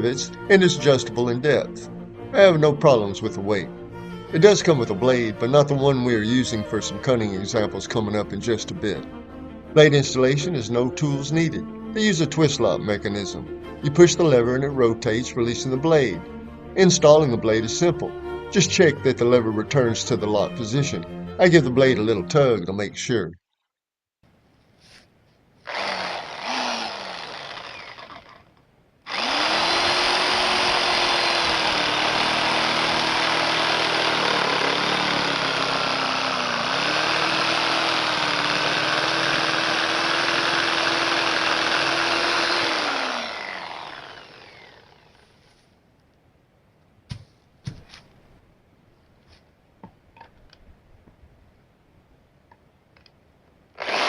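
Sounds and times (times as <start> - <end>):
reciprocating saw sawing: 25.6 - 28.5, 29.1 - 45.4, 53.8 - 54.0.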